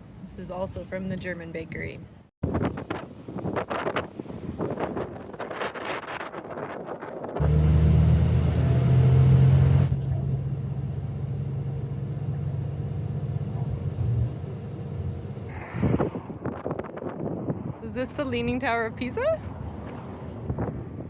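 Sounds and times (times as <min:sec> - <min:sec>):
vehicle engine low rumble: 0:07.2 - 0:21.0.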